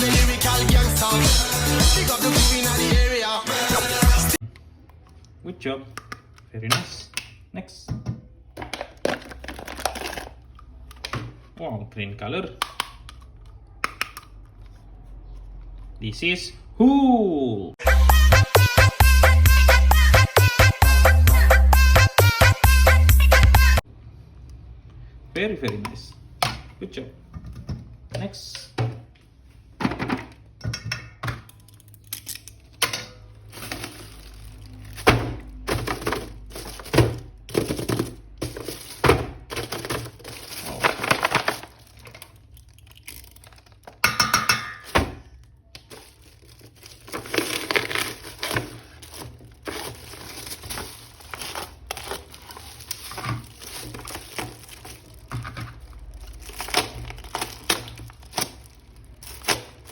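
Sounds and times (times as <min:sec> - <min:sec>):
plastic packaging crinkling: 0:09.0 - 0:10.9, 0:31.6 - 0:44.0, 0:45.2 - 0:59.9.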